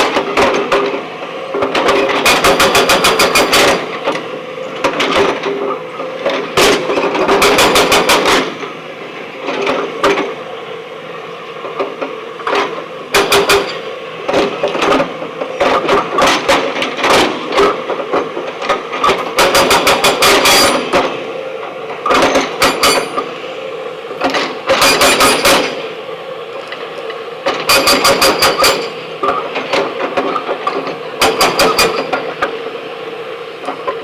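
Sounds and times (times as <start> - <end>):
hydraulic rock breaker hammering stone: 1.6 - 4.2, 6.6 - 8.6, 12.5 - 21.2, 22.0 - 23.3, 24.2 - 25.9, 27.5 - 32.4.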